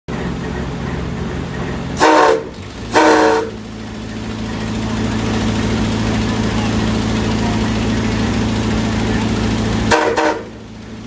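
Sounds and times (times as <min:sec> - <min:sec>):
steam whistle blasts: 0:02.0 - 0:03.6, 0:09.9 - 0:10.6.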